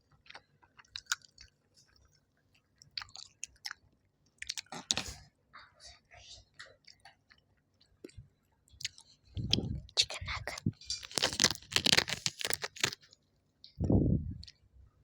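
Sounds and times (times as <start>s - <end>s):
chewing crisp food: 0.0s - 5.2s, 6.5s - 13.2s
muffled mouth sounds: 8.8s - 10.8s, 13.7s - 14.6s.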